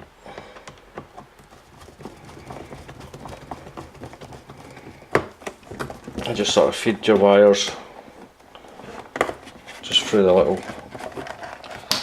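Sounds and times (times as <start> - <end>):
screwdriver and plastic parts tapping: 0.0 - 12.0.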